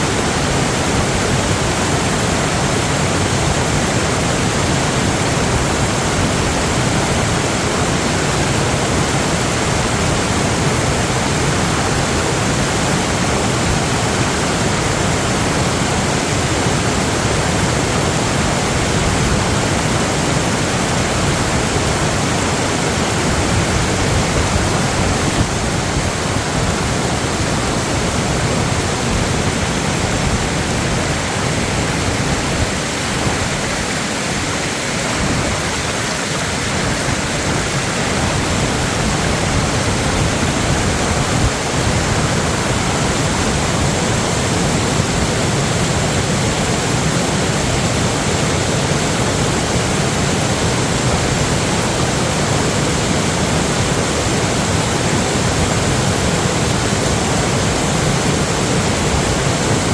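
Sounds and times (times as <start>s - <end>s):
water rushing: 0.0s - 59.9s.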